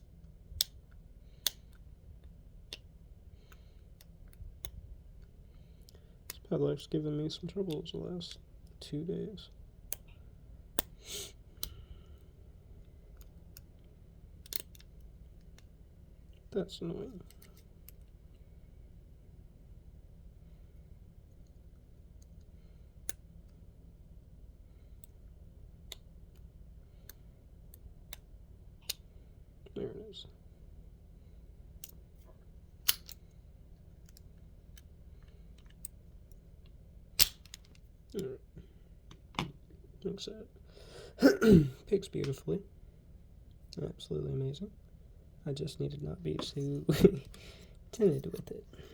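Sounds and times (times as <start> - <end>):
lock pick clicking and scraping: 14.4 - 14.9, 32.8 - 33.2, 37.2 - 37.8.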